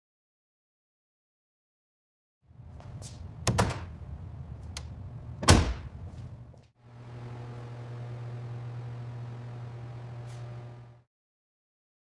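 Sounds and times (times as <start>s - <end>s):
steady low hum: 2.6s - 11.0s
loud slam-like thump: 5.4s - 6.0s.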